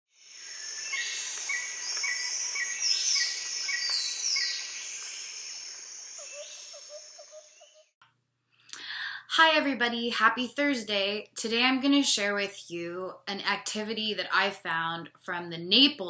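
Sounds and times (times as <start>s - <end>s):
high insect drone: 0.1s - 7.9s
birds chirping: 0.2s - 8.0s.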